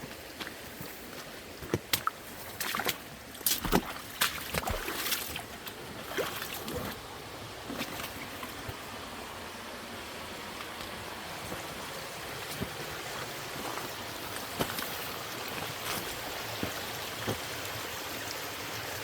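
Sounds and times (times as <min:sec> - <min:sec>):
fast mountain creek running: 0:00.0 - 0:19.0
sharp clicks and splashes: 0:01.6 - 0:07.0.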